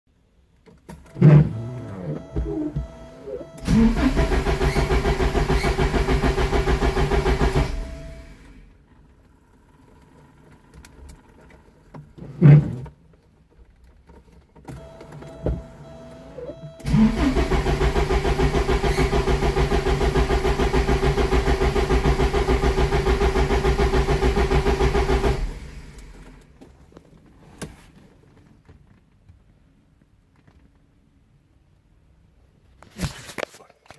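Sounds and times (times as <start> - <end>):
engine cranking on starter: 0.9 - 8.7, 14.8 - 26.5
short steady tone: 1.1 - 3.7.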